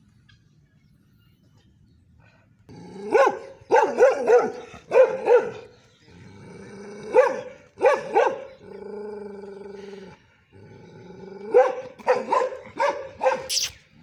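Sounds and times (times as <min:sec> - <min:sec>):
dog barking: 0:03.1 - 0:05.7, 0:07.1 - 0:08.6, 0:11.5 - 0:13.7.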